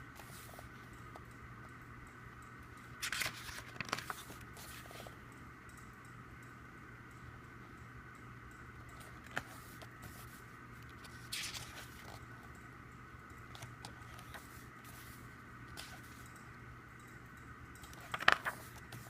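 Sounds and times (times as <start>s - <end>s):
steady low hum: 0.0s - 19.0s
paper handling click: 3.0s - 5.0s, 11.0s - 12.2s, 17.9s - 19.0s
paper rustle: 3.0s - 5.0s, 11.0s - 12.2s, 18.0s - 19.0s.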